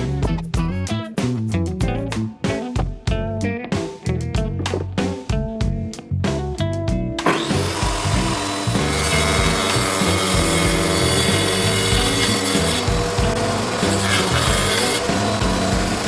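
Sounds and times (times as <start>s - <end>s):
guitar music: 0.0s - 16.0s
power tool working wood: 7.2s - 16.0s.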